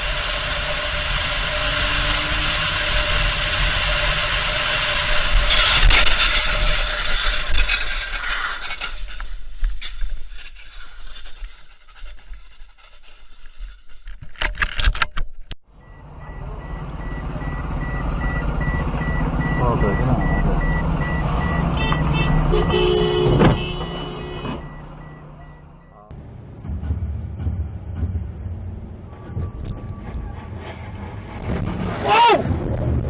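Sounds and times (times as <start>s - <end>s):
car road and engine noise: 0.0s - 9.4s, 14.8s - 33.0s
high-pitched beep: 15.8s - 22.1s, 24.2s - 26.1s.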